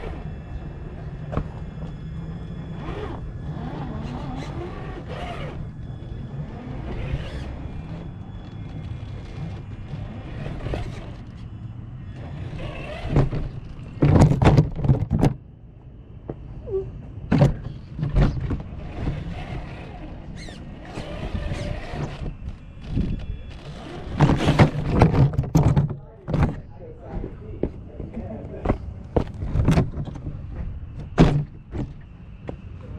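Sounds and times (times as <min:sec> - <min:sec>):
toy car motor rumble: 0:00.0 - 0:14.7, 0:18.1 - 0:25.6
knocks and clatters on rock: 0:24.2 - 0:26.6.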